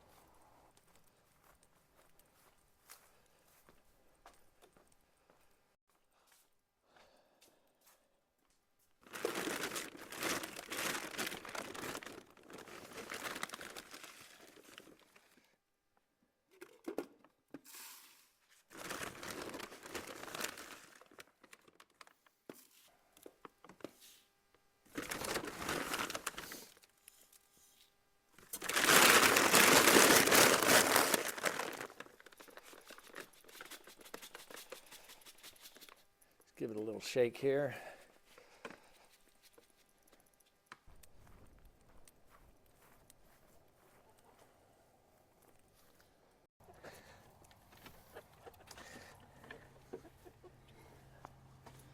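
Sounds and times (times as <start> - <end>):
feed bag rustling and crinkling: 9.0 - 15.4, 18.7 - 22.0, 24.9 - 26.8, 28.4 - 33.9.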